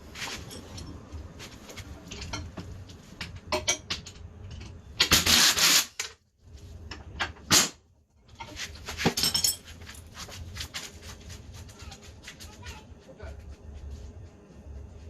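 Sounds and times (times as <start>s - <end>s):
metal tools clinking: 0.2s - 1.2s, 9.1s - 10.1s.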